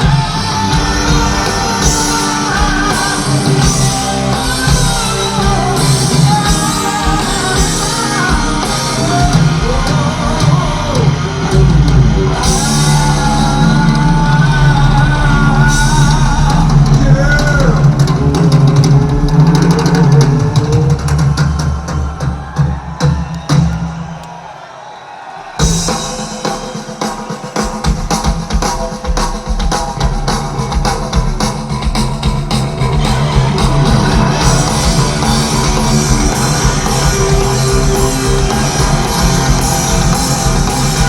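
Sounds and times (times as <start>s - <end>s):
bending melodic guitar line: 0.0s - 20.2s, 30.5s - 41.0s
heavy metal band playing live: 0.0s - 24.2s, 25.6s - 41.0s.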